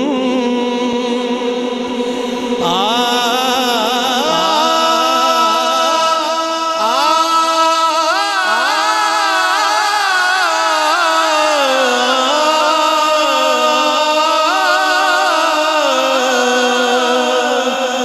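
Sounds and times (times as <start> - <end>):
chorus of voices chanting: 0.0 - 18.0
held drone: 1.4 - 7.5.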